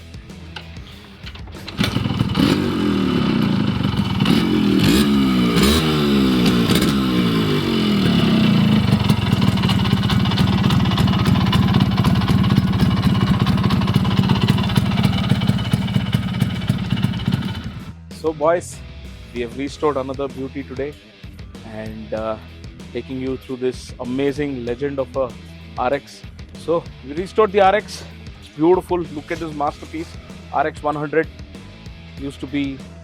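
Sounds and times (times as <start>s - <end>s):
two-stroke motorcycle engine revving: 1.5s - 18.0s.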